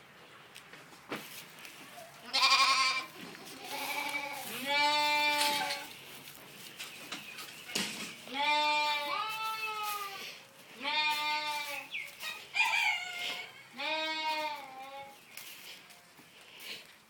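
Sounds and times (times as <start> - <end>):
young farm animal bleating: 2.0 - 6.0, 8.2 - 16.2.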